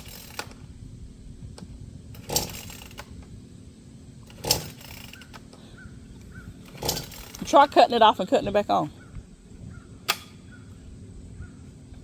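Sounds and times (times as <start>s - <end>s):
starter cord rasping pull: 0.0s - 0.6s, 1.6s - 3.4s, 4.2s - 5.6s, 6.2s - 7.8s.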